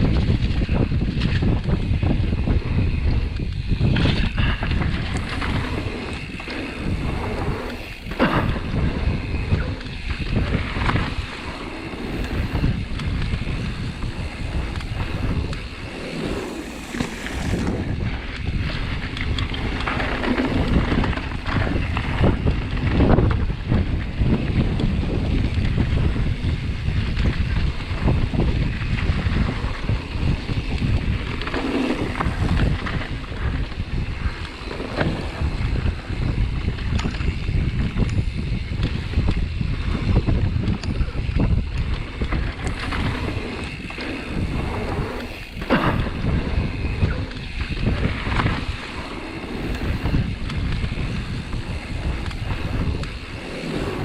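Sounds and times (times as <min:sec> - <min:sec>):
bike rattle: 0:00.0 - 0:54.0
bike tyre roar: 0:00.0 - 0:54.0
wind buffeting microphone: 0:00.0 - 0:54.0.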